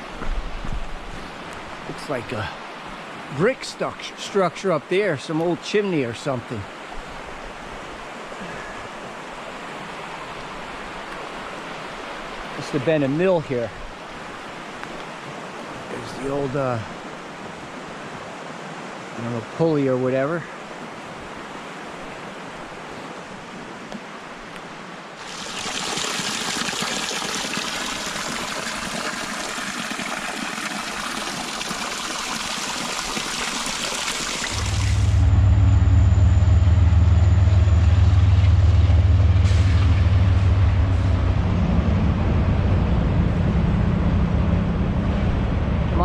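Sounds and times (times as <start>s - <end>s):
rushing water hissing: 0.0s - 18.2s, 25.1s - 35.3s, 37.8s - 41.8s
train engine drone: 34.5s - 46.0s.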